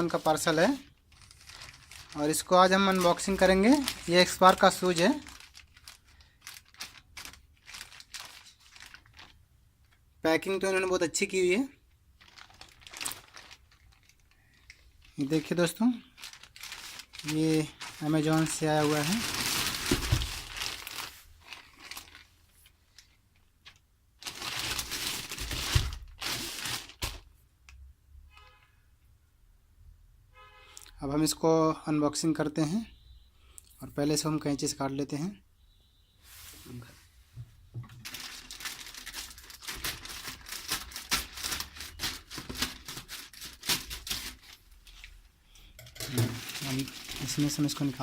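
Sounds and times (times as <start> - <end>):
packaging crinkling: 0.0 - 10.1, 12.2 - 27.3, 38.0 - 48.0.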